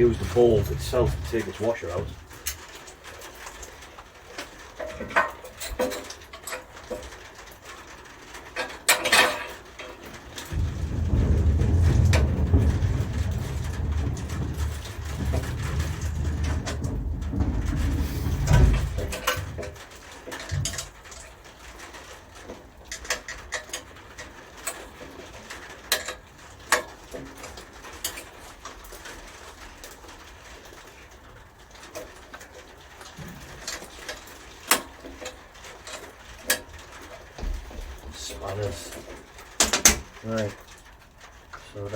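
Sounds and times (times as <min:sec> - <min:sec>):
low rumble: 0:00.0 - 0:02.3, 0:10.3 - 0:19.8
loud thump: 0:10.5 - 0:19.8.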